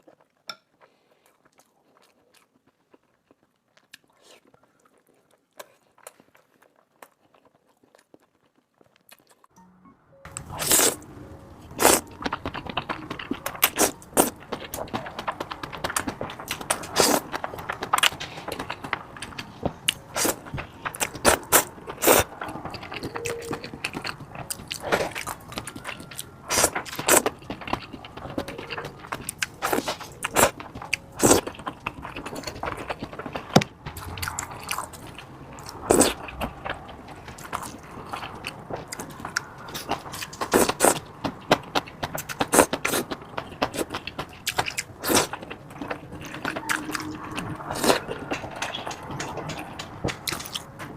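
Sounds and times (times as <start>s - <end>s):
person chewing and biting: 10.3s - 50.7s.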